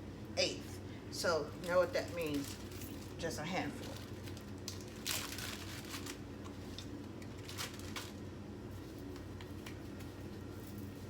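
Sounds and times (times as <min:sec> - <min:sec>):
steady low hum: 0:00.0 - 0:11.0
almonds clicking and rustling: 0:01.6 - 0:08.3.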